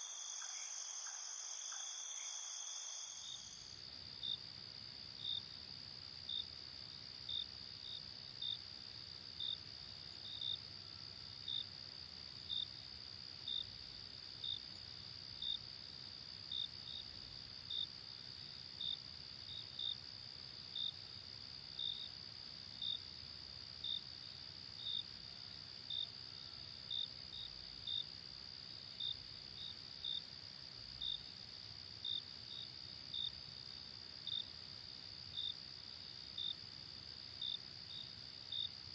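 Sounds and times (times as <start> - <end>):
high-pitched insect trill: 0.0 - 4.4
crickets chirping: 0.0 - 38.9.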